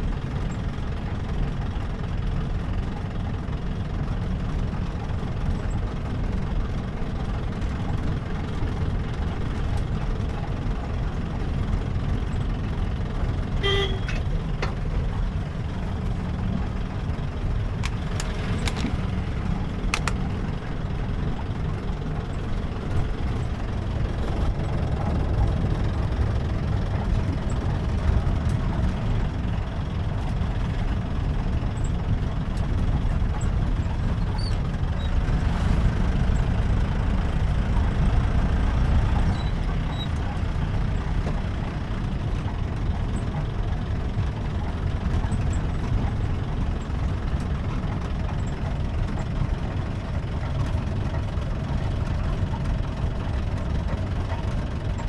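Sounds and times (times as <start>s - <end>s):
engine and road rumble: 0.0s - 55.0s
short horn toot: 13.6s - 14.3s
sharp rattling clicks: 16.9s - 20.8s.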